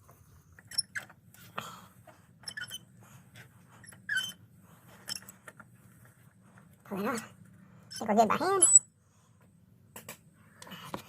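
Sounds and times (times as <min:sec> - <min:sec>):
short squeaks: 0:00.6 - 0:01.2, 0:02.4 - 0:02.9, 0:03.8 - 0:04.4.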